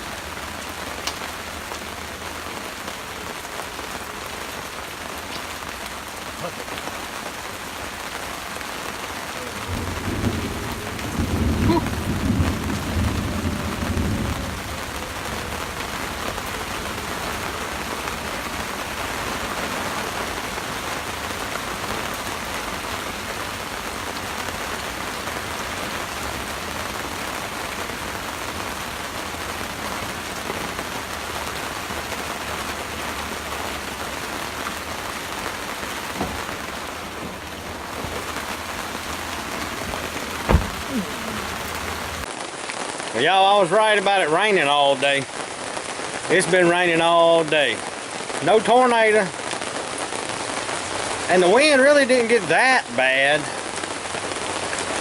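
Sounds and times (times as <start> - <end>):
steady rain: 0.0 - 55.0
low rumble of thunder: 9.7 - 18.4.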